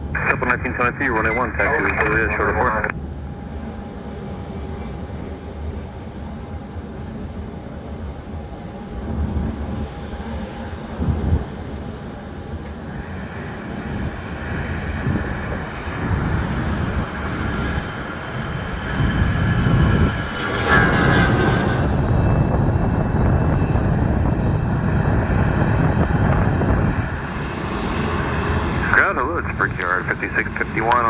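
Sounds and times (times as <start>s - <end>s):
jet engines running: 0.0s - 3.0s, 6.8s - 31.0s.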